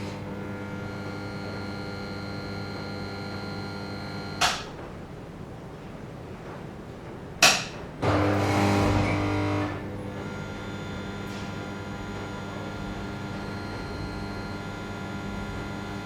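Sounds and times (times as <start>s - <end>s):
electrical hum of lights: 0.0s - 16.0s.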